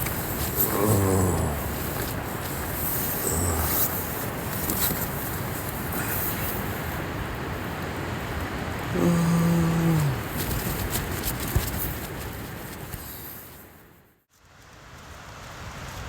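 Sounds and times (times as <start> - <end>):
tent fabric flapping: 0.0 - 6.6, 9.2 - 13.6.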